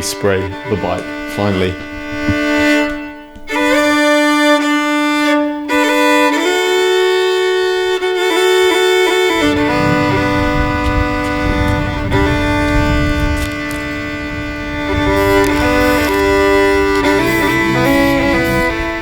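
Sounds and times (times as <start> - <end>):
bowed strings sustained notes: 0.0 - 19.0
low rumble: 9.0 - 19.0.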